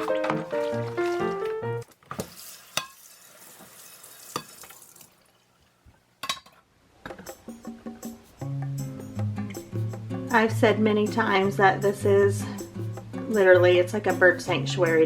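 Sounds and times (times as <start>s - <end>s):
background music: 0.0s - 1.9s, 7.2s - 15.0s
tap water running into sink: 0.0s - 5.2s.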